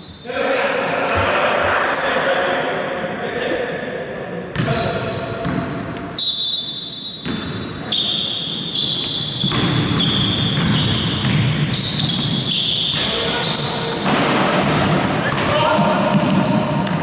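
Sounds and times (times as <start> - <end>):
shoes squeaking on floor: 4.7 - 5.6, 6.2 - 14.1
basketball bouncing: 5.4 - 5.8, 7.2 - 7.6, 9.0 - 13.1, 14.0 - 17.0.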